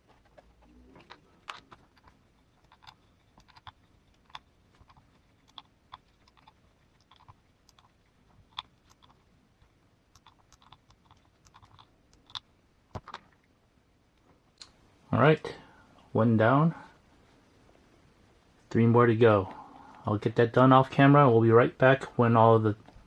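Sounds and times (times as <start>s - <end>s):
hex driver clicks and taps: 1.5s - 7.9s, 8.5s - 9.2s, 10.1s - 12.4s.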